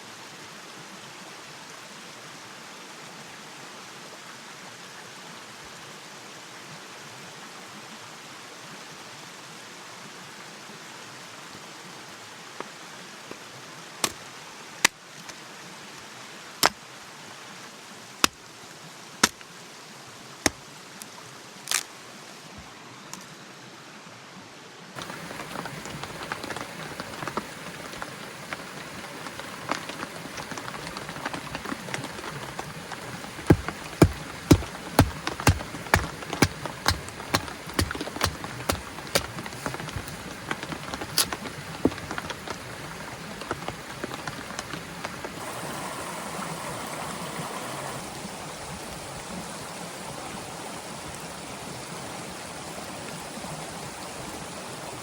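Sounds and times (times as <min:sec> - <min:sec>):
rain hiss: 0:24.9 - 0:55.0
hiss with small crackles: 0:25.0 - 0:35.9
sharp knocks: 0:33.2 - 0:42.6.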